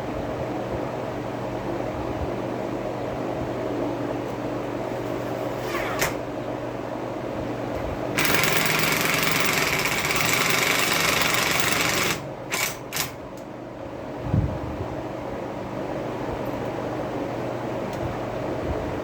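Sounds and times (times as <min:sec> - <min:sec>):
power drill driving fastener: 0:08.2 - 0:13.2.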